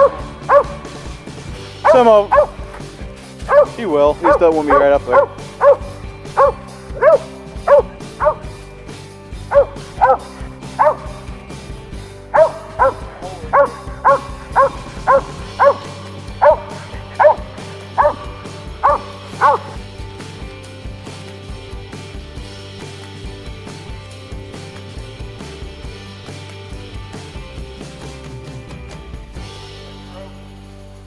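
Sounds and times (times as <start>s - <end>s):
dog barking: 0.0s - 21.4s, 30.0s - 30.4s.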